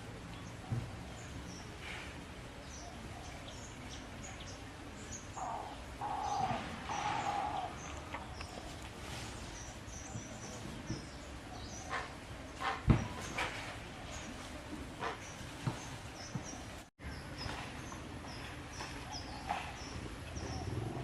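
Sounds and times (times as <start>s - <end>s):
small birds chirping: 0.2s - 12.6s.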